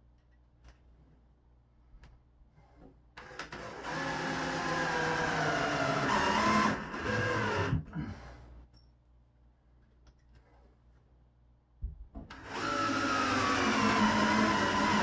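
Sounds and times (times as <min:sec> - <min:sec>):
power tool motor running: 0:03.2 - 0:07.8, 0:12.3 - 0:15.0.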